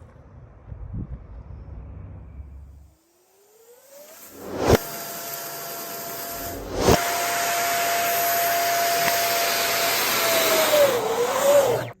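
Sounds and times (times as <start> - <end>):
thin whining tone: 3.0 - 12.0
rush of air: 4.2 - 5.2, 6.0 - 8.9.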